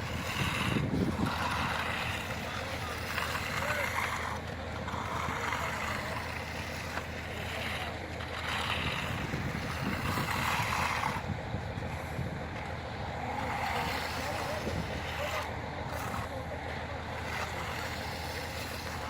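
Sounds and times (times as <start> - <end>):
broom sweeping concrete: 0.0 - 11.3.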